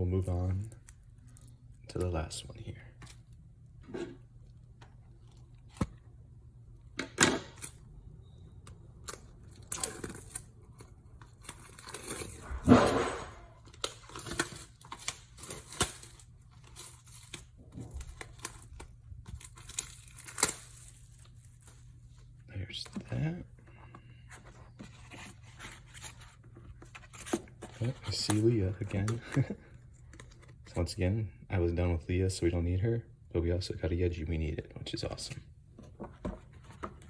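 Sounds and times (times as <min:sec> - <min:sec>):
clicks and rustles of handling: 0:08.6 - 0:30.8, 0:35.0 - 0:37.0
plastic wrapping tearing: 0:09.0 - 0:22.2.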